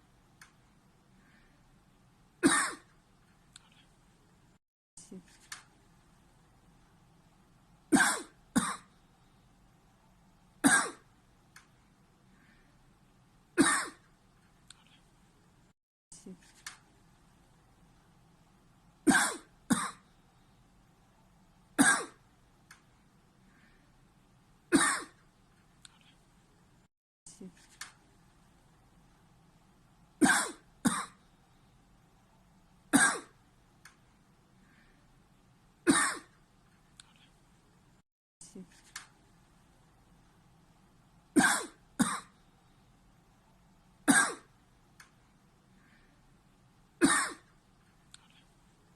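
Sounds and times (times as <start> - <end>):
man coughing sharply: 47.0 - 47.4.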